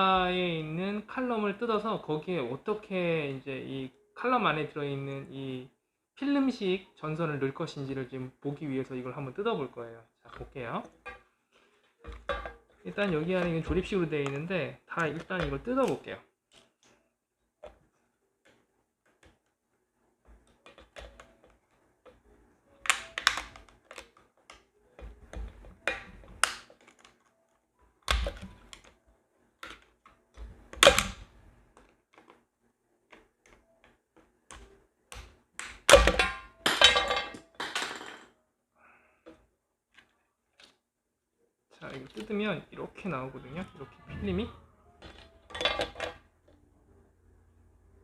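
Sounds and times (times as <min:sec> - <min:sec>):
plastic clicks and snaps: 0:22.8 - 0:27.4, 0:28.0 - 0:29.0.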